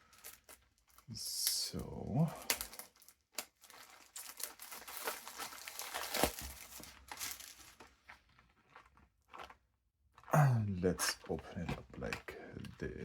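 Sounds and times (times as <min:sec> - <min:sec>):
plastic wrap crinkling and tearing: 0:00.0 - 0:09.6.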